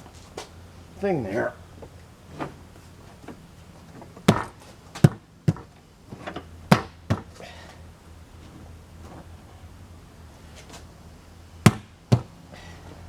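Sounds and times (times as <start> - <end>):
tools knocking on tire rim: 4.2 - 7.4, 11.7 - 12.4.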